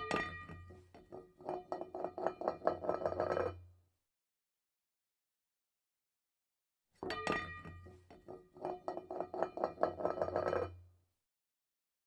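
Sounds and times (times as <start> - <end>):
clinks and taps: 0.0 - 3.5, 7.0 - 10.7.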